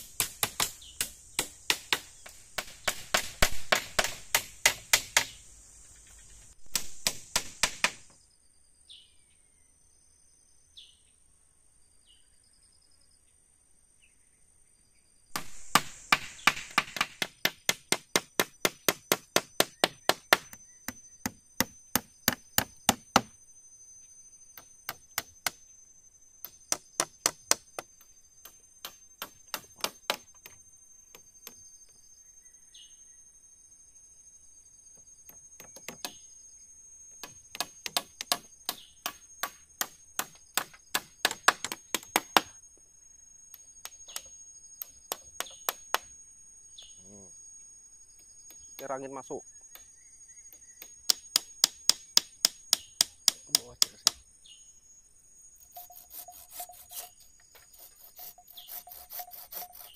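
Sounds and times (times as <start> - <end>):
chopping strikes on wood: 0.0 - 5.4, 6.7 - 8.2, 15.4 - 23.3, 26.7 - 27.9, 28.8 - 30.6, 35.6 - 36.2, 37.2 - 42.6, 45.1 - 46.1, 50.8 - 54.2
high insect trill: 0.0 - 59.9.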